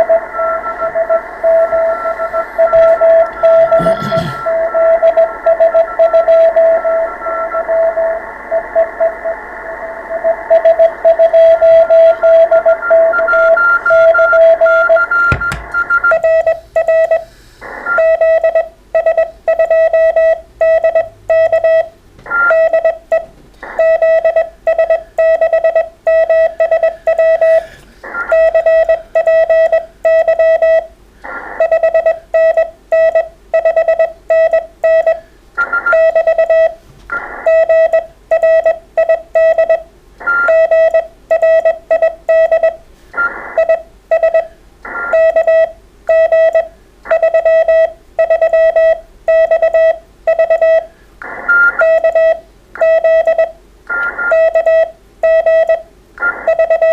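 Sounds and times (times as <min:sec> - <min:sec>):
morse code beeps: 0:00.0 - 0:09.2, 0:10.1 - 0:17.2, 0:17.9 - 0:30.9, 0:31.6 - 0:36.8, 0:37.4 - 0:50.9, 0:51.5 - 0:56.9
radio receiver hiss: 0:01.2 - 0:04.4.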